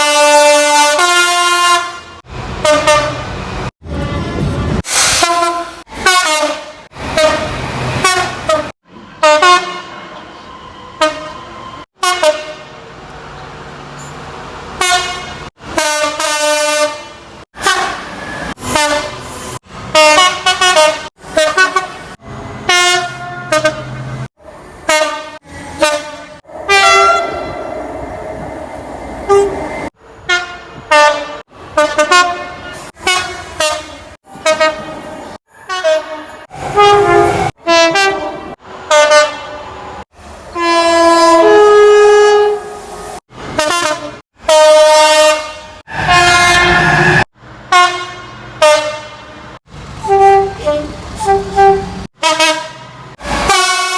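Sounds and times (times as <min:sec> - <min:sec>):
short train horn blasts: 0:00.0 - 0:04.4, 0:05.0 - 0:10.2, 0:11.0 - 0:12.8, 0:14.8 - 0:24.2, 0:24.9 - 0:27.8, 0:30.2 - 0:43.0, 0:43.6 - 0:49.4, 0:50.0 - 0:53.9
train running rumble: 0:45.9 - 0:52.1.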